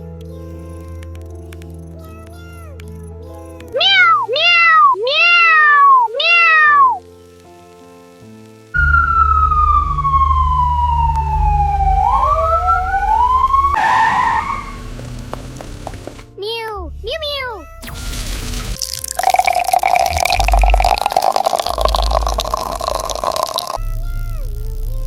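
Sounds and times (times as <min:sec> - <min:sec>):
background music: 0:00.0 - 0:23.8
cat meowing: 0:03.8 - 0:07.0
deep rumble: 0:08.8 - 0:13.8
long wail sliding in pitch: 0:08.8 - 0:14.9.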